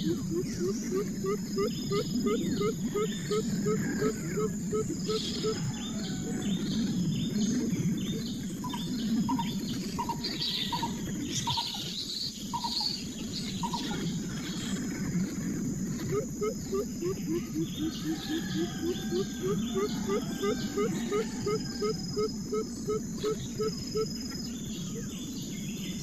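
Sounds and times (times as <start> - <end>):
birds calling: 0.0 - 26.0
insect drone: 0.0 - 26.0
high bird chirps: 16.1 - 24.1.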